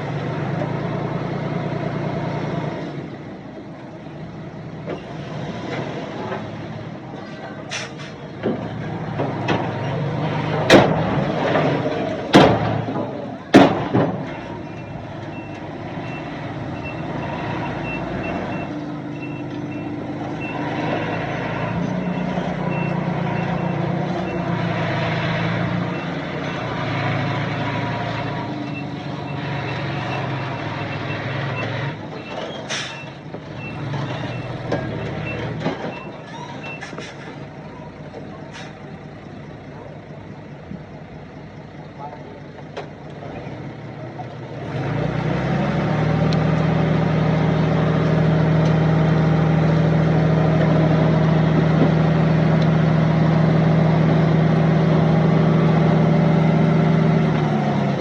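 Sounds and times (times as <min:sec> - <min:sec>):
heavy diesel engine under load: 0:00.0 - 0:58.0
loud bangs: 0:08.4 - 0:14.6
reversing alarm beeping: 0:14.6 - 0:24.4.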